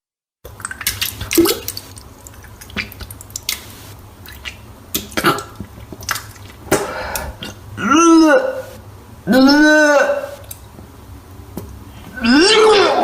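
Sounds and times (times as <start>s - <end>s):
liquid splattering: 0.5s - 6.8s
low steady hum: 0.5s - 13.0s
person vomiting: 6.7s - 10.4s, 12.2s - 13.0s.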